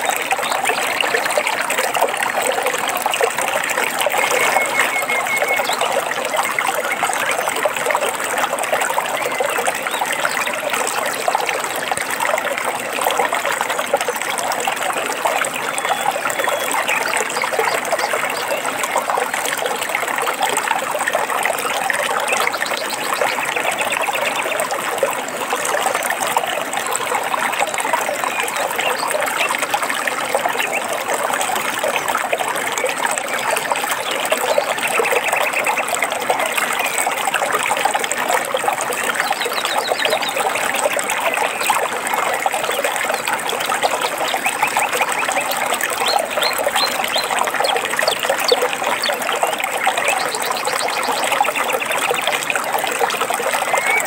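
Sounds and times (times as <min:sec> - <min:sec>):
water trickling and splashing: 0:00.0 - 0:54.0
faint bird chirps: 0:04.0 - 0:06.1, 0:53.6 - 0:54.0.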